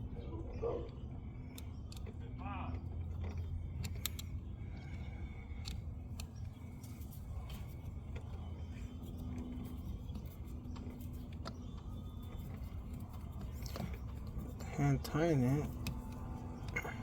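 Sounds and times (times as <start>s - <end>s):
steady low rumble: 0.0s - 17.0s.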